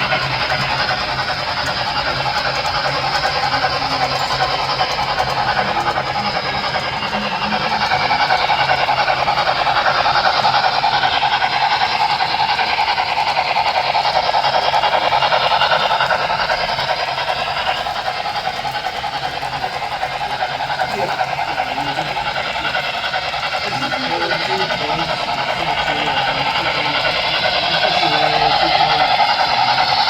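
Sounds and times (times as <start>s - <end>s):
model train running on track: 0.0s - 30.0s.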